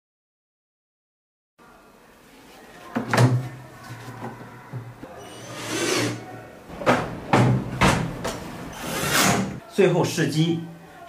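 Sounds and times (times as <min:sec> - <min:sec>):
knocks and clatter of machine parts: 0:06.7 - 0:08.5.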